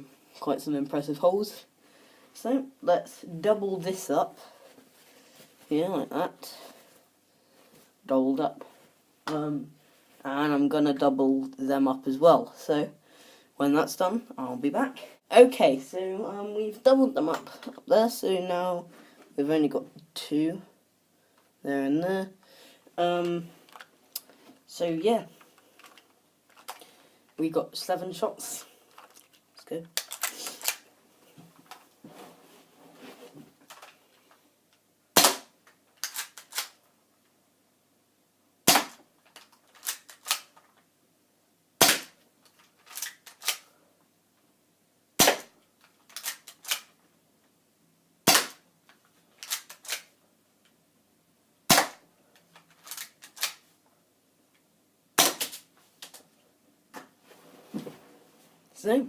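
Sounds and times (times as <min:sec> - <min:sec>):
bb gun shots: 0:35.2 - 0:35.5, 0:45.2 - 0:45.5, 0:48.3 - 0:48.6, 0:51.7 - 0:52.0.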